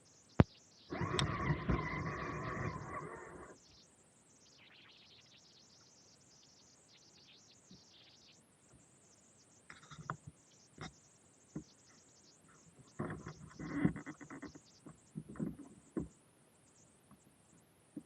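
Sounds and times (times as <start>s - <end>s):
faint steady hiss: 0.0s - 18.0s
toy truck rattling over rough ground: 0.9s - 3.6s.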